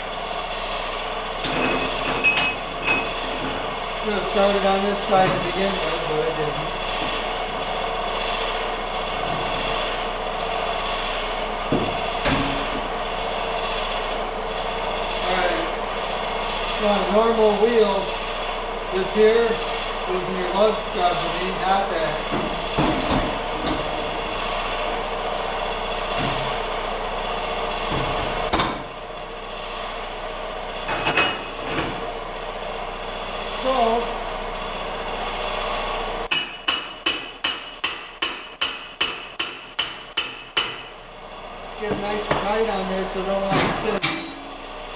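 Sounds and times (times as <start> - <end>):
machine hum: 0.0 - 39.2, 39.8 - 44.9
air compressor running: 0.0 - 44.9
hammer striking metal: 36.3 - 40.9, 44.0 - 44.6.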